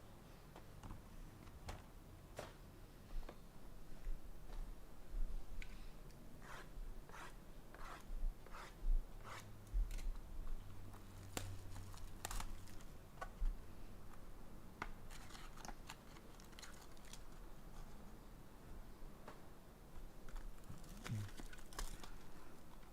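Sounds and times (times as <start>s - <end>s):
faint low hum: 0.0s - 22.9s
packaging clicks and crinkles: 11.2s - 12.9s, 15.1s - 17.4s, 20.6s - 22.3s
packaging cutting and rustling: 11.2s - 12.9s, 15.1s - 17.4s, 20.7s - 22.2s.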